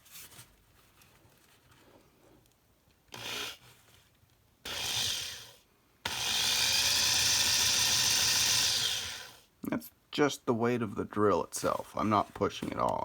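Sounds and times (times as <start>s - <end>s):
electric drill drilling metal: 4.7s - 5.4s, 6.1s - 9.4s.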